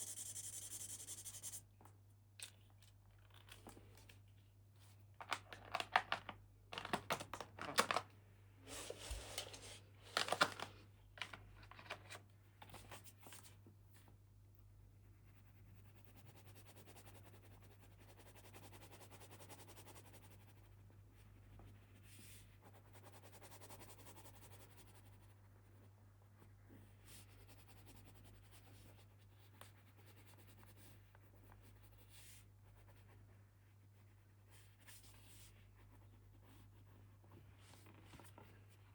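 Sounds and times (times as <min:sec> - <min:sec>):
steady low hum: 0:00.0 - 0:01.8
faint rustling and handling: 0:01.8 - 0:14.2, 0:31.2 - 0:38.9.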